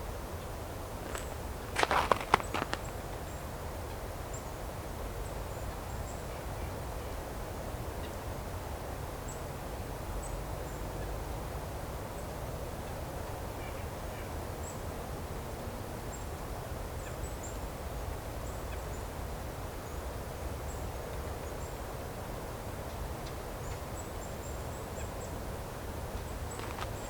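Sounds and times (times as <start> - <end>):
outdoor background hiss: 0.0 - 27.0
small birds calling: 26.2 - 27.0.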